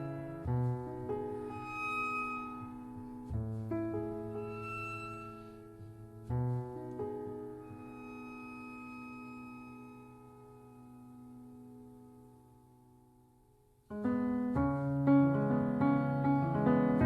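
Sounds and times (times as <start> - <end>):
sustained strings: 0.0 - 11.8
soft piano: 0.0 - 17.0.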